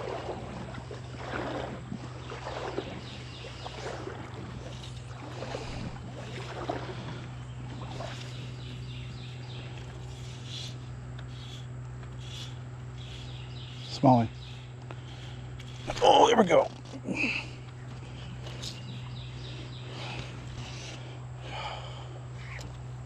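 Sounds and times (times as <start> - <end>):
splashing footsteps in water: 0.0 - 8.8.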